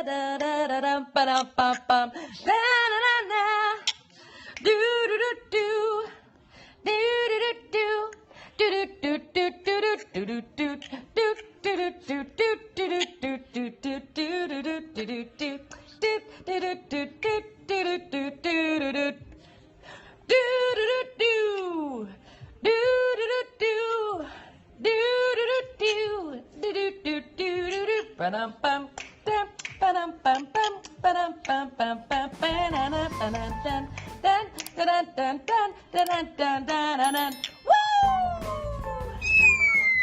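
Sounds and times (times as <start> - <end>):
parrot vocalizing: 39.2 - 40.0.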